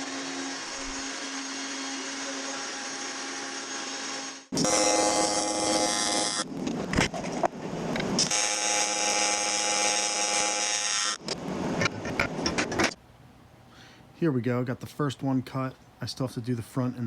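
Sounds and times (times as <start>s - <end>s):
power saw cutting metal: 0.0s - 6.5s, 8.2s - 11.2s.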